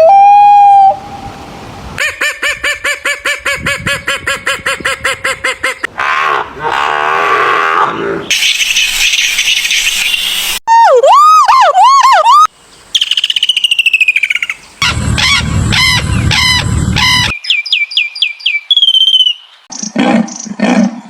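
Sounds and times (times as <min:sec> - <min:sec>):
quick bird chirps: 0:08.3 - 0:10.6
low rumble: 0:14.8 - 0:17.3
swooping bird whistles: 0:17.0 - 0:19.4.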